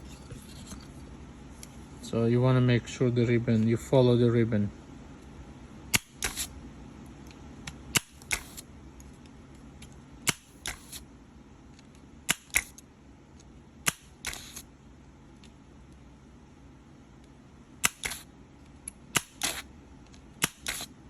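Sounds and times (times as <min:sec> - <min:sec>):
desoldering pump snapping: 0:07.2 - 0:08.6, 0:18.8 - 0:20.9.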